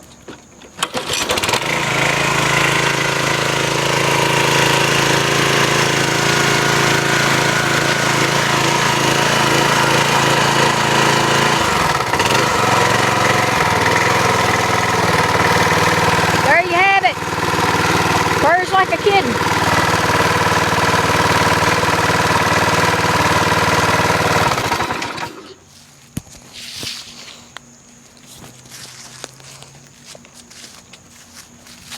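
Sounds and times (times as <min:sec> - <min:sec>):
pressure washer engine running: 0:00.8 - 0:25.6.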